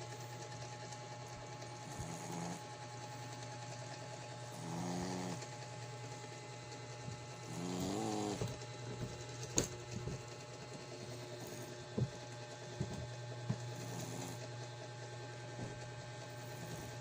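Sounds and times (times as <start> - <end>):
steady low hum: 0.0 - 17.0
dog snoring: 1.7 - 3.3, 4.4 - 5.6, 7.3 - 8.6, 11.0 - 12.2, 13.5 - 14.6, 16.2 - 17.0.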